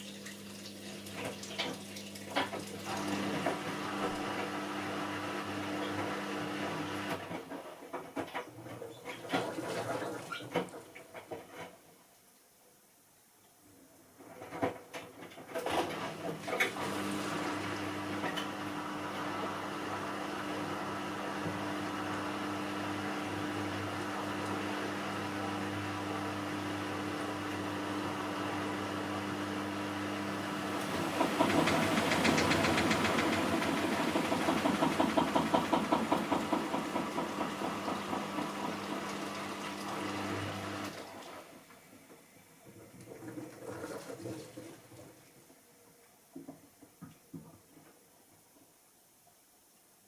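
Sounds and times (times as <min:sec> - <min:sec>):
washing machine motor hum: 0:00.0 - 0:07.8, 0:15.5 - 0:42.1
rapid rhythmic knocking and rattling: 0:30.5 - 0:38.8.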